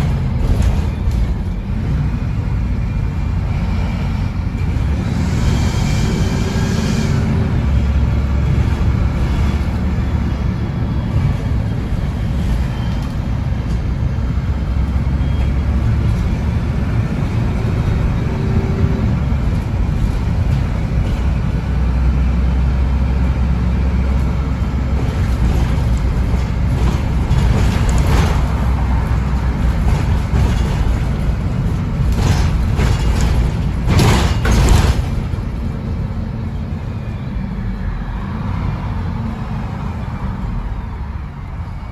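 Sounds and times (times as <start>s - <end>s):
bus engine rumble: 0.0s - 41.9s.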